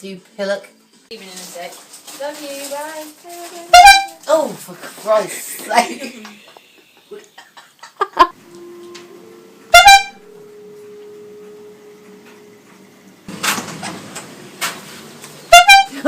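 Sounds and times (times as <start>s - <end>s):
air horn blast: 3.4s - 4.3s, 8.4s - 13.6s, 14.6s - 16.0s.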